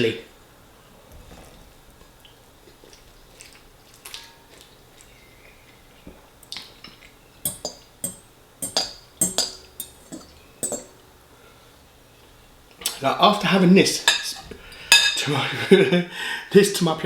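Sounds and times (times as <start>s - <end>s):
cutlery clinking against a dish: 6.9s - 11.0s, 14.1s - 15.3s.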